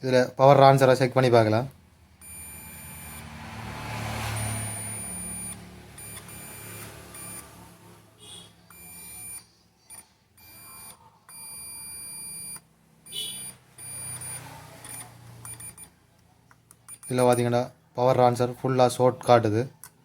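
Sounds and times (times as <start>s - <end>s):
multimeter continuity buzzer beeping: 2.2s - 16.0s, 16.9s - 17.5s.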